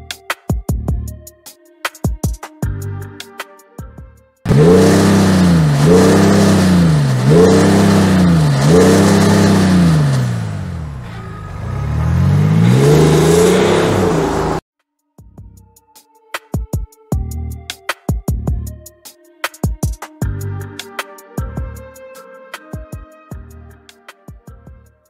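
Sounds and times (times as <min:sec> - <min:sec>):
car engine revving: 0:04.5 - 0:14.6.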